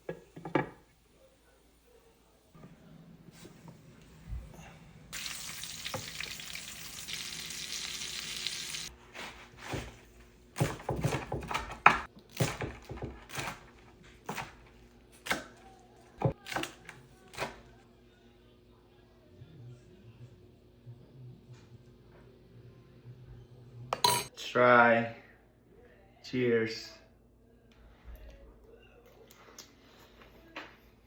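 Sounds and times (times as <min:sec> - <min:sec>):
food frying in hot oil: 0:05.1 - 0:08.9.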